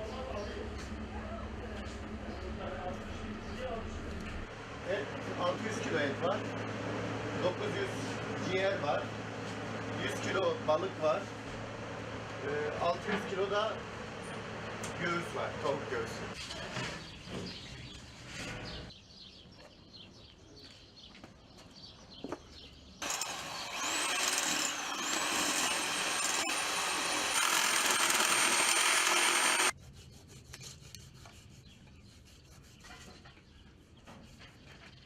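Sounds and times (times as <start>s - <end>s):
electric machine whining: 23.0s - 29.7s.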